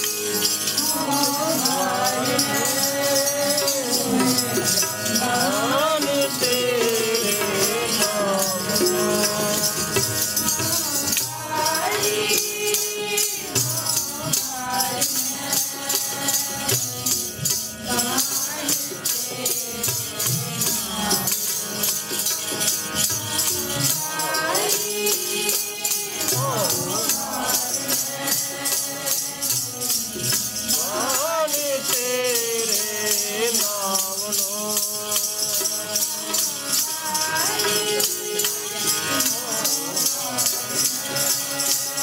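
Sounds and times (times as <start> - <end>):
rhythmic jingling percussion: 0.0 - 42.0
voices singing devotional melody: 0.0 - 42.0.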